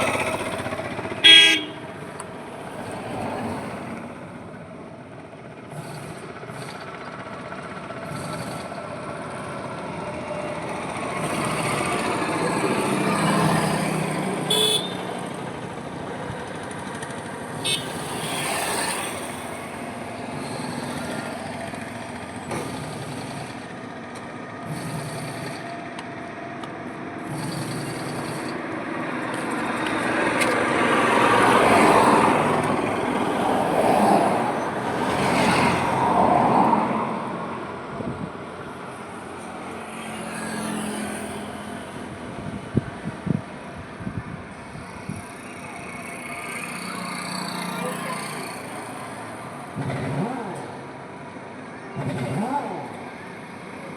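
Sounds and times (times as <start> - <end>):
vehicles passing on highway: 0.0 - 53.9.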